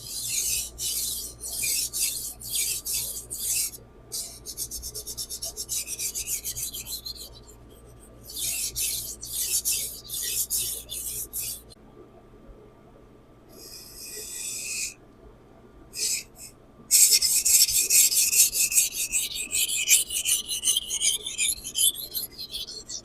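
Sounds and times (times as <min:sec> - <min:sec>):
knife rasping on whetstone: 0:00.3 - 0:07.4.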